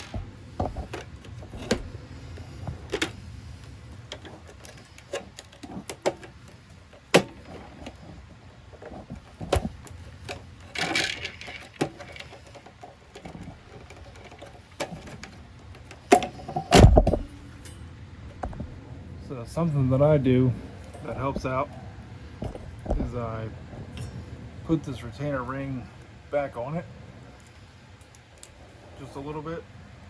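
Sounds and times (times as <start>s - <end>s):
hand tools clicking and knocking: 0.0s - 18.5s.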